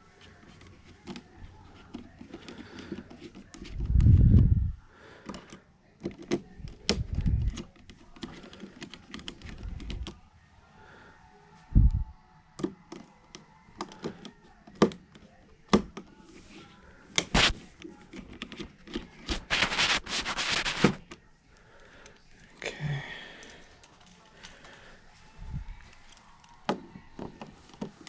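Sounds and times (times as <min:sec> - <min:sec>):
scraping rustle: 0:19.1 - 0:21.0
tools and small parts clicking: 0:23.4 - 0:24.7.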